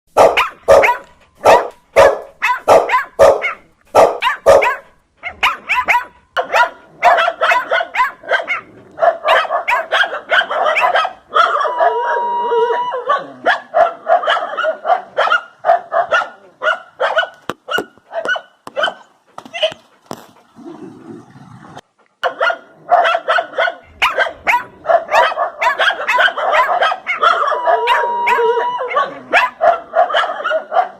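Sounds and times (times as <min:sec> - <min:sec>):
dogs barking: 0:00.1 - 0:19.8, 0:22.2 - 0:30.9
short steady held tone: 0:27.4 - 0:29.0.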